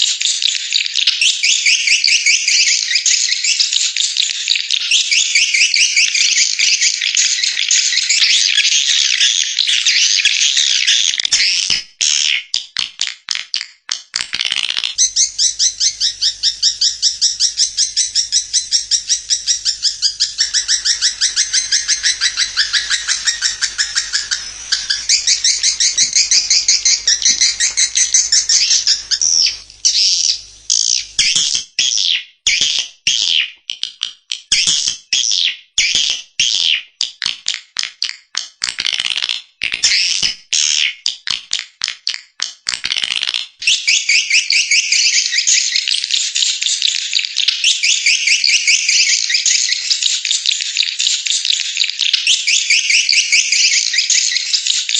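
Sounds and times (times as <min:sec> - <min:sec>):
swiftlet chirps: 0:15.0 - 0:31.3.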